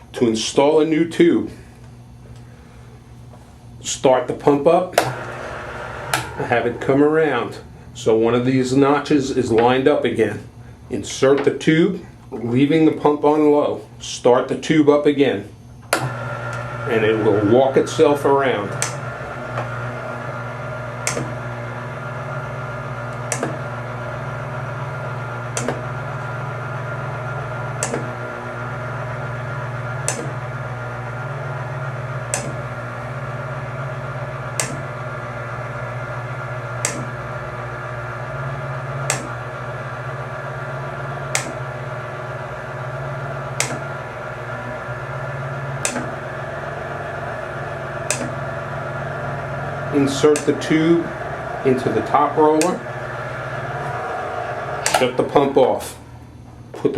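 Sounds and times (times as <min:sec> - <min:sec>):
pump motor hum: 0:04.9 - 0:10.0, 0:15.8 - 0:56.3
sharp pump clicks: 0:34.6 - 0:34.8, 0:41.3 - 0:41.6, 0:43.6 - 0:43.8, 0:45.8 - 0:46.1, 0:48.1 - 0:48.4.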